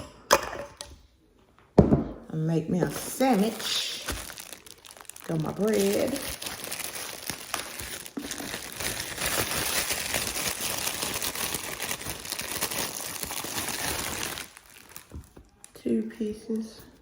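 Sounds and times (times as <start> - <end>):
plastic bag crinkling: 2.8 - 15.8.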